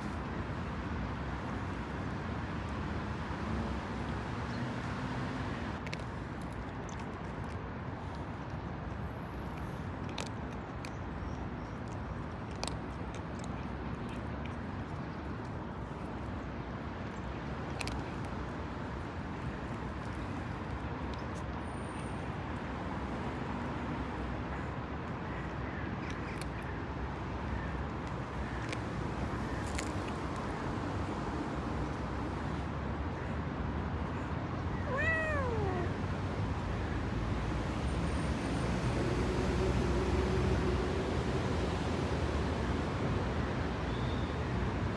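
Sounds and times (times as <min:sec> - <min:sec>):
street traffic hum: 0:00.0 - 0:44.9
cat meowing: 0:34.8 - 0:35.9.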